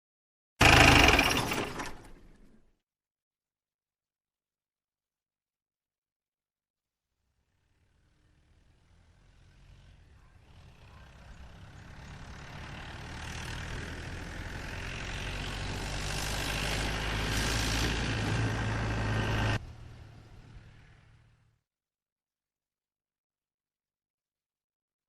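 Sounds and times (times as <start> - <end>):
engine approaching: 0.6 - 2.4, 7.3 - 21.6.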